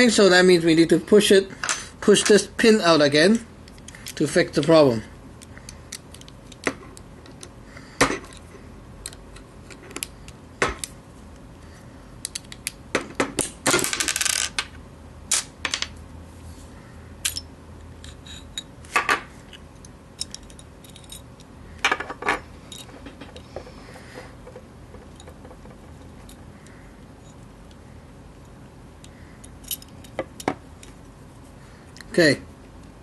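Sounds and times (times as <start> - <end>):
small metal parts clicking: 12.2 - 12.8, 17.2 - 18.7, 19.5 - 23.4, 29.0 - 31.0.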